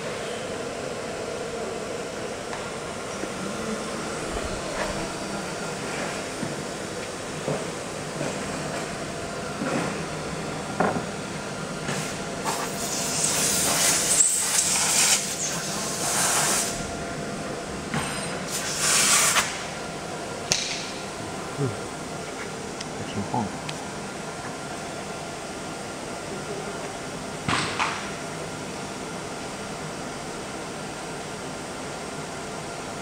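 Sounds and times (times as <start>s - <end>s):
machine humming: 0.0s - 27.2s
air hissing: 11.8s - 16.9s, 18.3s - 19.8s.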